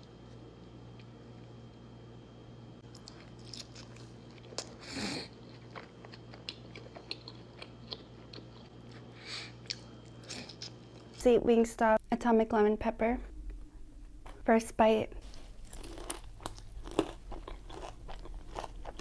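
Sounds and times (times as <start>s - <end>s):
steady low hum: 0.0s - 19.0s
crunchy bites and chewing: 2.8s - 11.1s, 15.6s - 19.0s.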